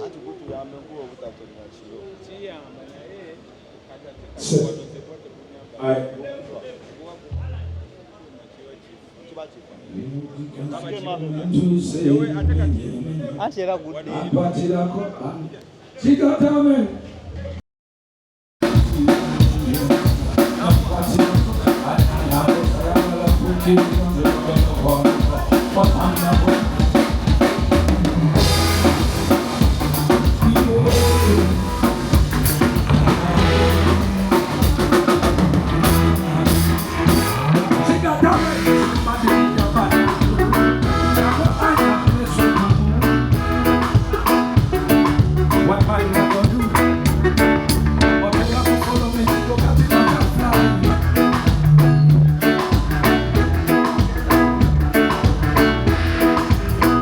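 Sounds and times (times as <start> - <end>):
band music: 18.6 - 57.0.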